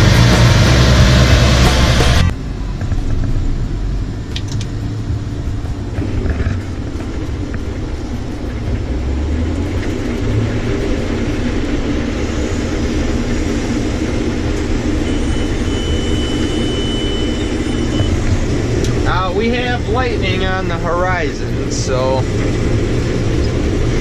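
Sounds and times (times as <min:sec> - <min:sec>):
combine harvester rumble: 0:00.0 - 0:24.0
thin high tone: 0:10.0 - 0:23.9.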